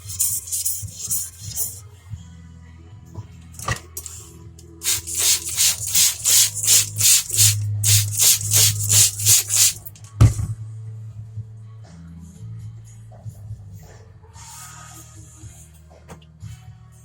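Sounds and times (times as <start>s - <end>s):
knife scraping on whetstone: 0.0s - 1.8s.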